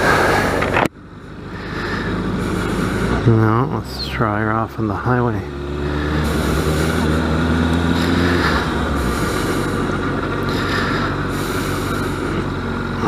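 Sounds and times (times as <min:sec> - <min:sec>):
motorcycle engine running: 0:00.0 - 0:13.0.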